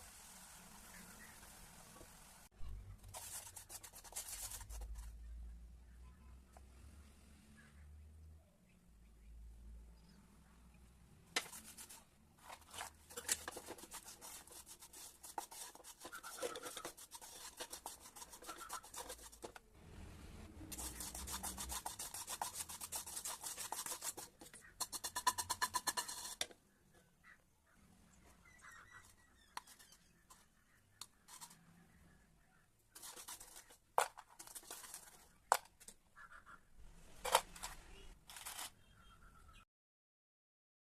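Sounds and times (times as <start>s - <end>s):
spatula scraping in a pan: 11.4s - 19.6s, 20.7s - 26.5s, 31.2s - 31.6s, 32.9s - 33.8s.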